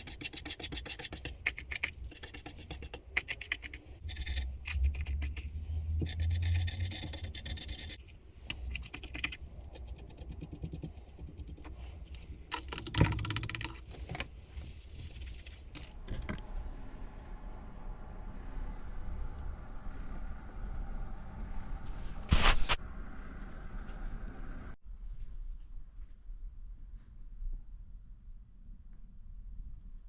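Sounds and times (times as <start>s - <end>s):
hand scraping and rubbing surface: 0.0s - 16.0s, 21.9s - 22.8s
steady low background hum: 0.0s - 30.0s.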